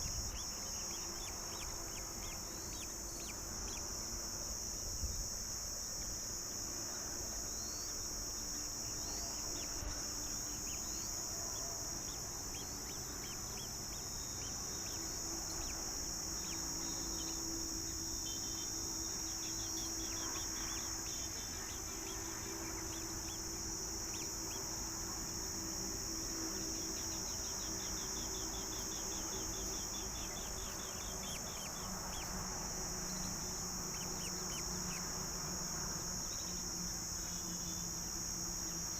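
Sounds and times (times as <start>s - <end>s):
bird chirps: 0.0s - 4.0s, 7.5s - 24.7s, 26.5s - 35.3s
high-pitched insect chorus: 0.0s - 38.9s.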